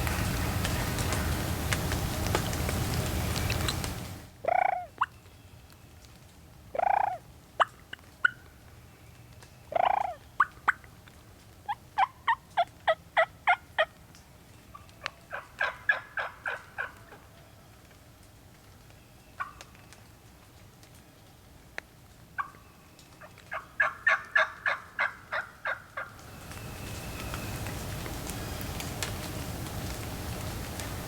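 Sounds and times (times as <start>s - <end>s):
wild turkey gobbling: 3.3s - 5.1s, 6.8s - 8.5s, 9.7s - 10.9s, 11.7s - 14.0s, 14.7s - 17.3s, 19.4s - 19.7s, 22.4s - 26.3s
short turkey yelps: 15.0s - 17.2s, 23.5s - 26.1s.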